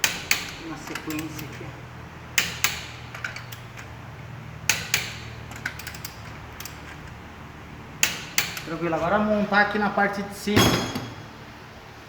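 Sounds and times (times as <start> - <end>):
torque wrench clicking: 0.0 - 7.2, 8.0 - 8.8.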